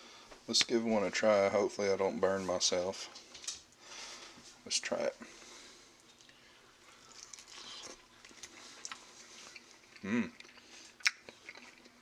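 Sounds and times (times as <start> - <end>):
person chewing: 6.0 - 12.0.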